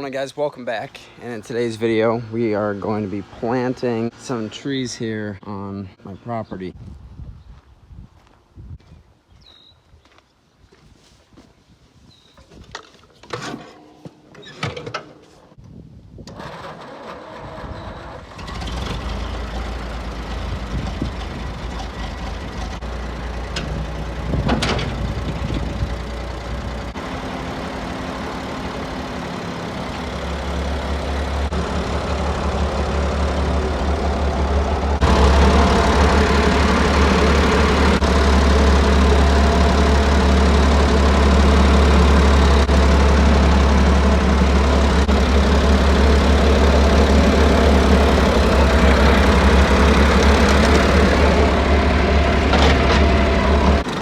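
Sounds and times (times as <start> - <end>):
tractor engine running: 16.4 - 54.0.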